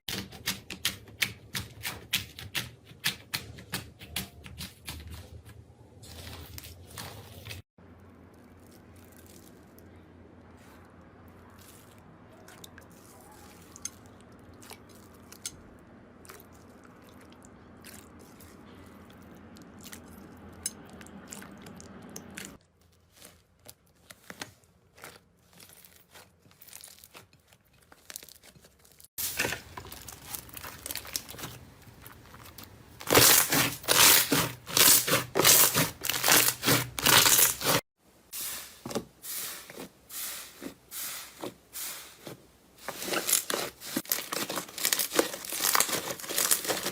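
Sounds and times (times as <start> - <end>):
slime crackling and popping: 29.7 - 37.8, 43.2 - 46.9.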